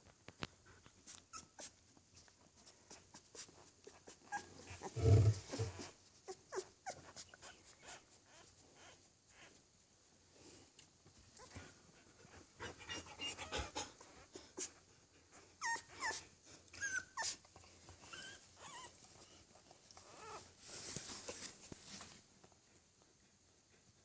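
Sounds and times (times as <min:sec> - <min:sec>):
puppy squeaking and whimpering: 0:01.3 - 0:01.7, 0:03.9 - 0:09.5, 0:15.6 - 0:17.4, 0:18.0 - 0:19.0, 0:20.0 - 0:20.4
rustling on bedding: 0:17.2 - 0:22.9.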